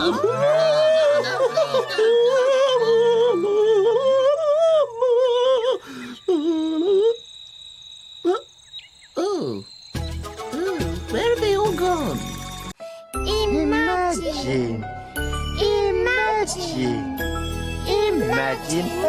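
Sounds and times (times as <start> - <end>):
high voice singing wordlessly: 15.6 - 19.0.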